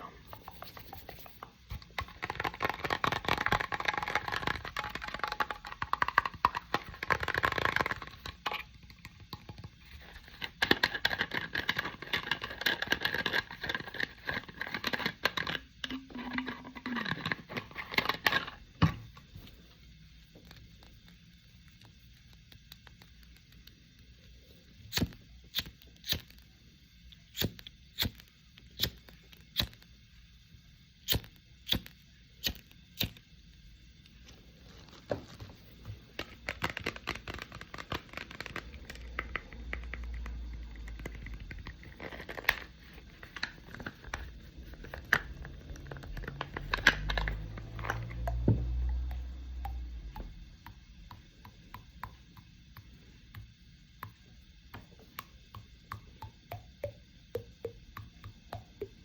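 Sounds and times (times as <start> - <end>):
dense crackling and crinkling: 34.0 - 48.1.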